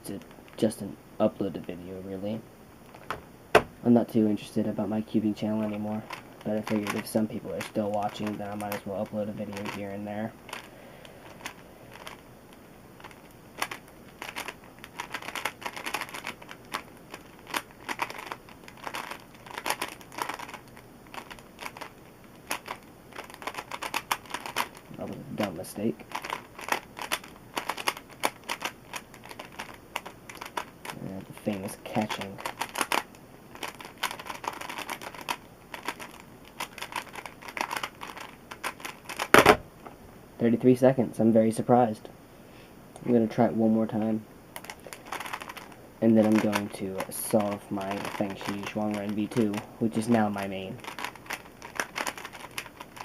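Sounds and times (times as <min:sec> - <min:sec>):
puzzle cube plastic clicks: 0:05.6 - 0:12.2, 0:13.0 - 0:24.9, 0:26.1 - 0:39.6, 0:44.6 - 0:53.0
loud plastic clack: 0:38.7 - 0:39.7.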